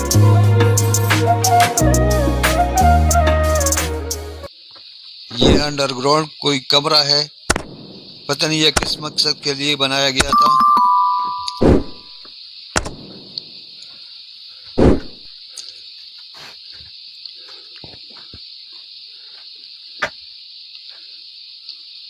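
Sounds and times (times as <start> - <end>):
insects chirring: 4.4 - 22.0
loud thump: 5.4 - 5.7, 7.5 - 8.2, 8.8 - 9.3, 11.6 - 12.1, 12.8 - 13.2, 14.8 - 15.3
sharp knock: 11.6 - 12.0, 12.8 - 13.2, 14.8 - 15.2.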